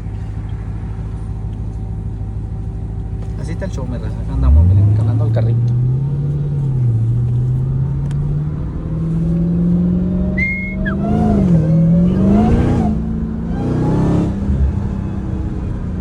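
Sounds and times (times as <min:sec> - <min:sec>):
car engine accelerating: 0:00.0 - 0:16.0
high squeal: 0:10.3 - 0:12.8.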